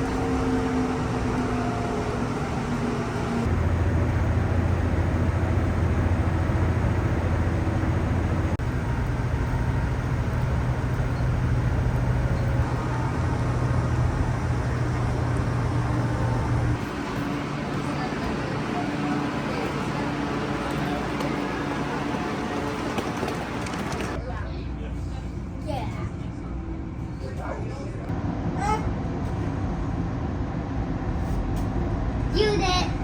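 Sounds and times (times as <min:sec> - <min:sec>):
low vehicle rumble: 0:00.0 - 0:24.2.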